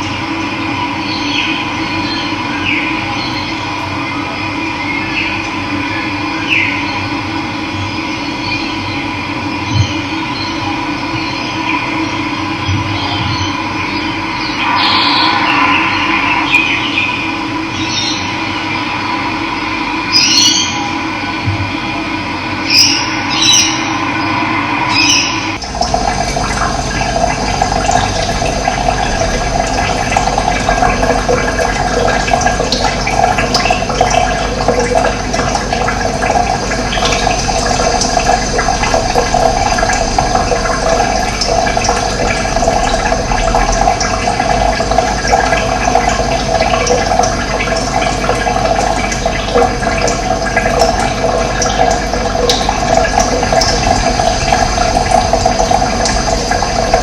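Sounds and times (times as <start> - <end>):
running water: 9.7 - 20.9, 22.6 - 57.0.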